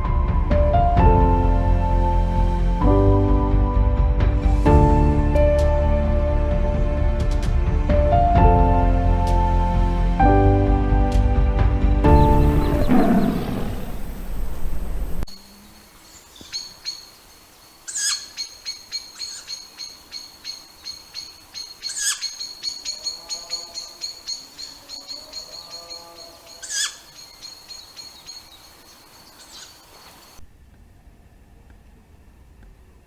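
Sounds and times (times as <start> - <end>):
bird chirping rapidly: 12.1 - 14.8, 17.9 - 29.8.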